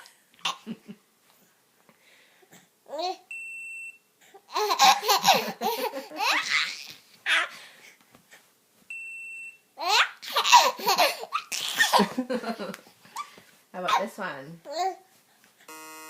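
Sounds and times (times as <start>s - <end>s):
baby laughing: 0.0s - 0.9s, 4.4s - 7.5s, 9.8s - 14.0s.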